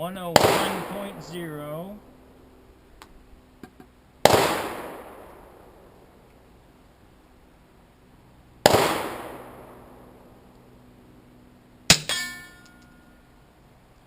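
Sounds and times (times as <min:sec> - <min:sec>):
pistol shot echoing: 0:00.3 - 0:02.0, 0:04.2 - 0:06.0, 0:08.6 - 0:10.1
metallic clank: 0:11.9 - 0:13.3.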